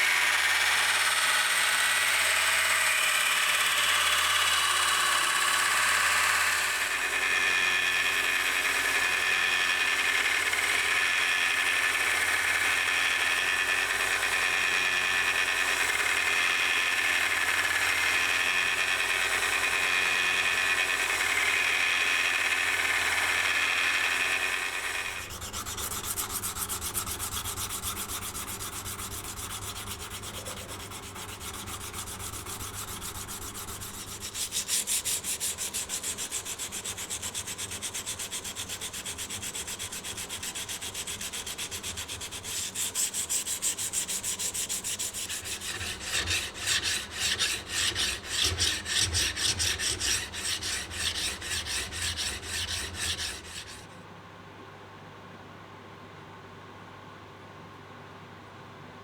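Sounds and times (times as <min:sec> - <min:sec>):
power tool running: 0:00.0 - 0:53.9
hand sanding strokes: 0:25.1 - 0:54.0.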